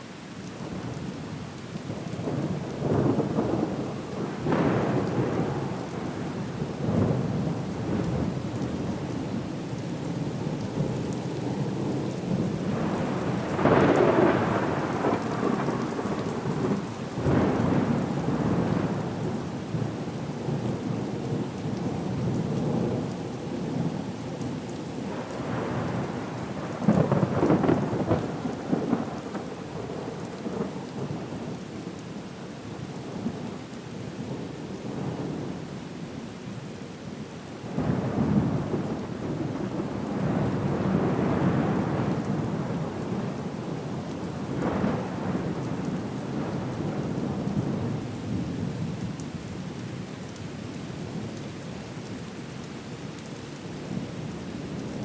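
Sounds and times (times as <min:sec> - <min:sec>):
heavy rain: 0:00.0 - 0:55.0
rolling thunder: 0:25.1 - 0:30.8.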